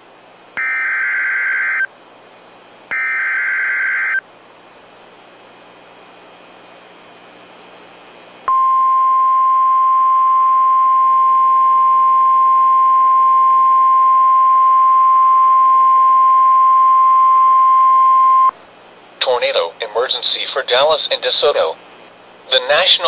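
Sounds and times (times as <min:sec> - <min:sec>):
emergency alert warning tone: 0:00.6 - 0:01.9, 0:02.9 - 0:04.2.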